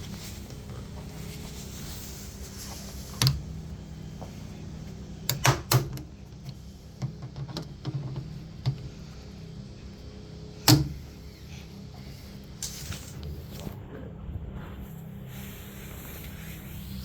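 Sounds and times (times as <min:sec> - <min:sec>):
steady low hum: 0:00.0 - 0:17.0.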